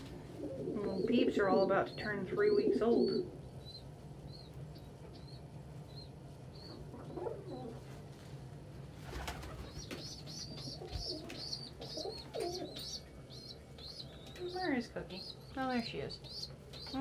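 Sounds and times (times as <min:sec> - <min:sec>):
pigeons cooing: 0:00.0 - 0:03.9, 0:06.5 - 0:07.9, 0:09.1 - 0:15.4
steady low hum: 0:00.0 - 0:17.0.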